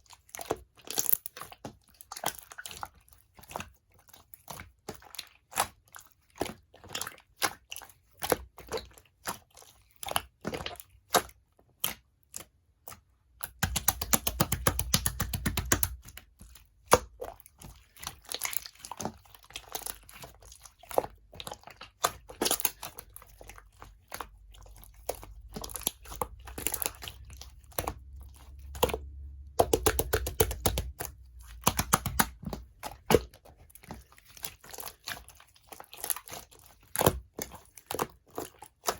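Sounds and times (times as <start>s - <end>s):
slime sticky pops and clicks: 13.5s - 16.0s, 29.6s - 32.4s.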